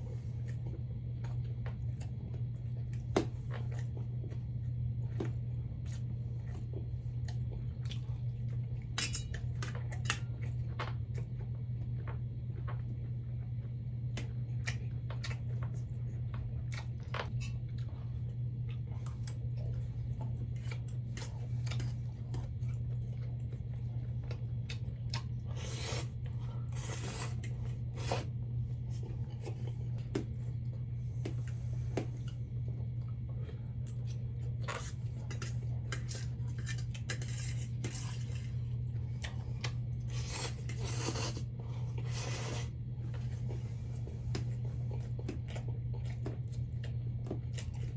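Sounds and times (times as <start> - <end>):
chewing: 14.2 - 28.3, 38.0 - 47.9.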